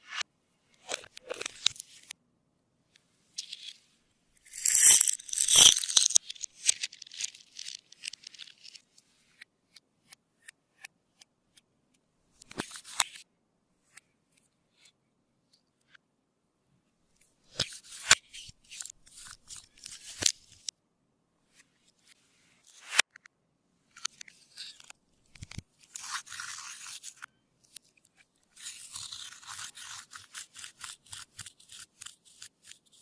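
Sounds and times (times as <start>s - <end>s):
slime crackling and popping: 4.5s - 8.5s.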